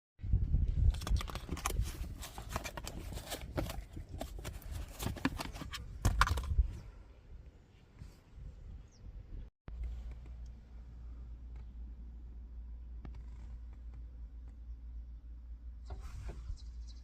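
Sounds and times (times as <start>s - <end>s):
handling clicks and knocks: 0.9s - 6.6s.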